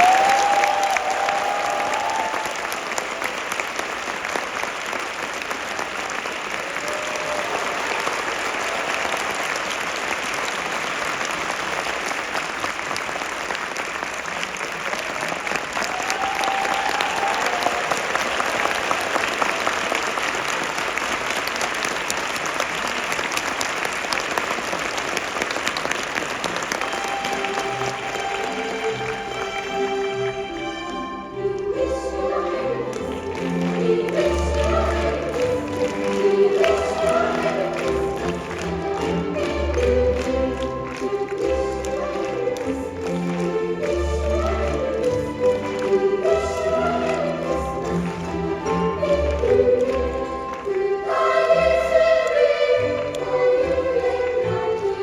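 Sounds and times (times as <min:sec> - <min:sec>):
audience applauding: 0:00.0 - 0:30.8, 0:32.2 - 0:55.0
orchestral music: 0:26.2 - 0:55.0.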